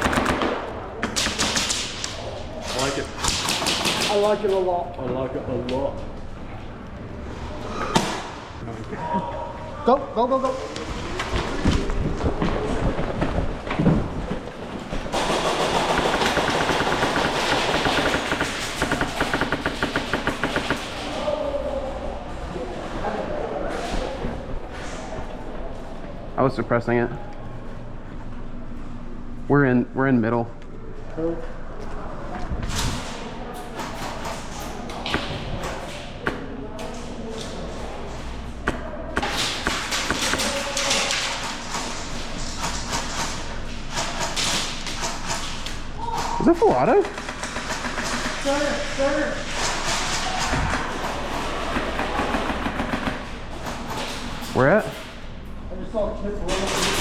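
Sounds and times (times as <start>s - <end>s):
airsoft rifle firing full auto: 15.1s - 21.1s.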